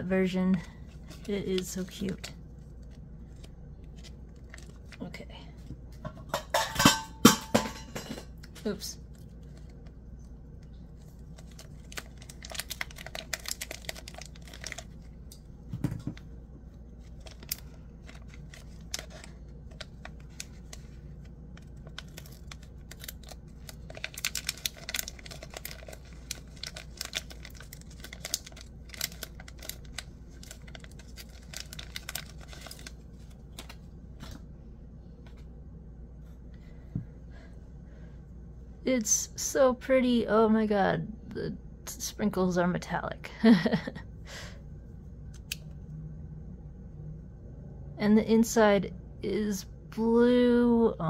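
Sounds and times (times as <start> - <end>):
plastic film peeling and crinkling: 0.2 - 5.1, 8.6 - 34.4.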